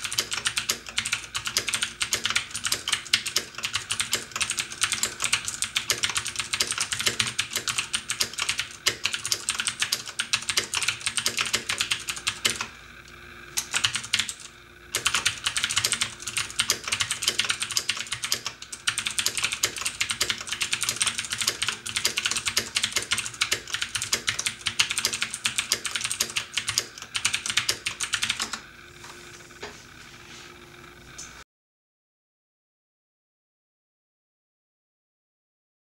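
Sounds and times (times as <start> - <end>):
fast typing on mechanical keyboard: 0.0 - 12.7, 13.6 - 28.6
air conditioner hum: 0.0 - 31.4.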